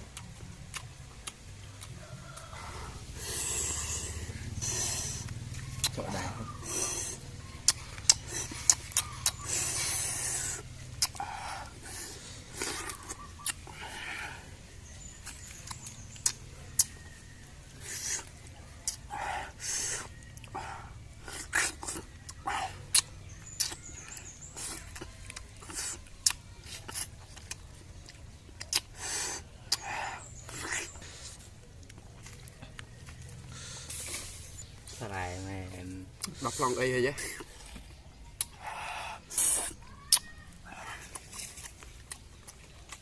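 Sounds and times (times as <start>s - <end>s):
crunchy chewing of fruit: 0.0s - 43.0s.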